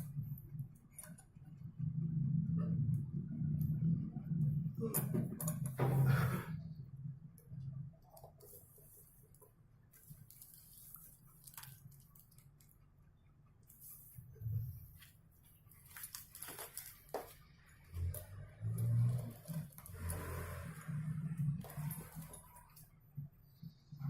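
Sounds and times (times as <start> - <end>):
handling clicks and rustles: 14.9 - 20.8.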